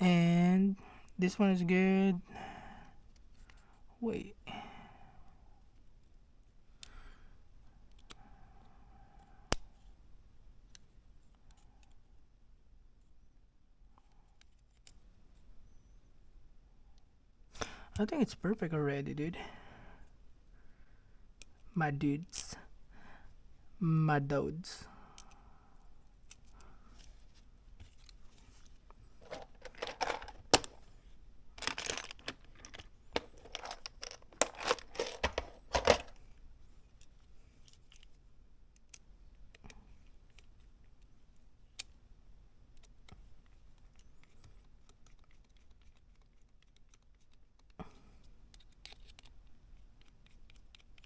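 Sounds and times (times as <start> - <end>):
scraping and crinkling of parts: 27.1 - 30.9, 31.6 - 36.2.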